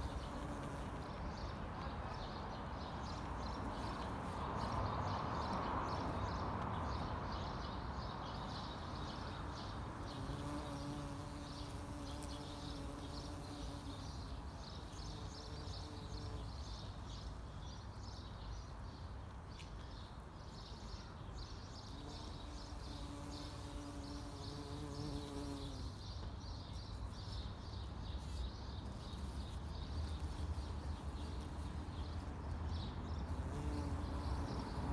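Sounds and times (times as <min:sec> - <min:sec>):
bumblebee buzzing: 0:00.0 - 0:01.0, 0:09.4 - 0:16.5, 0:22.0 - 0:26.0, 0:33.3 - 0:34.9
small birds chirping: 0:00.0 - 0:34.9.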